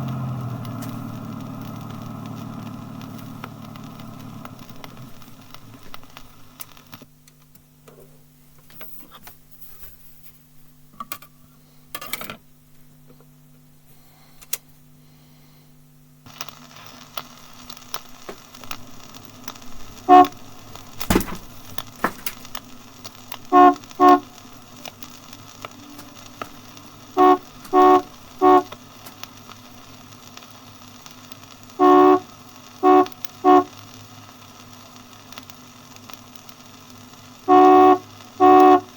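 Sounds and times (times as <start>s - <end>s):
boat horn tooting: 0.0s - 6.2s, 18.4s - 29.6s, 31.7s - 33.8s, 37.4s - 38.9s
engine drone: 0.0s - 6.8s, 17.6s - 35.0s, 37.2s - 38.9s.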